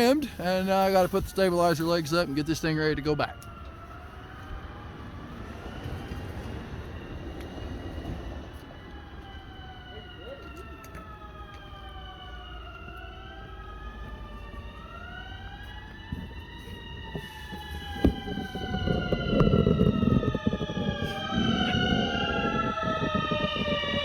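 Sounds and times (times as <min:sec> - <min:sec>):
sirens wailing: 0:00.0 - 0:24.0
low rumbling with clatter: 0:15.7 - 0:24.0.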